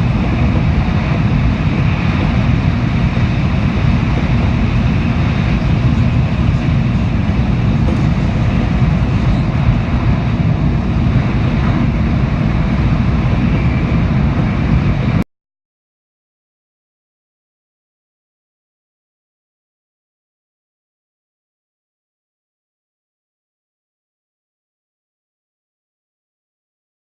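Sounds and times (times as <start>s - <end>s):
train running rumble and hiss: 0.0s - 15.2s.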